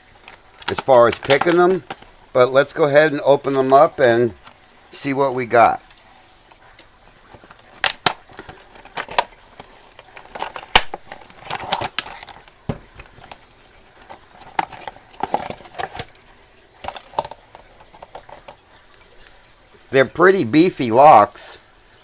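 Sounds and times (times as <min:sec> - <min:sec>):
rustling and scraping: 0:00.0 - 0:02.3, 0:05.8 - 0:19.3
padlock metal clicks: 0:00.6 - 0:02.0, 0:07.8 - 0:08.3, 0:10.0 - 0:13.4.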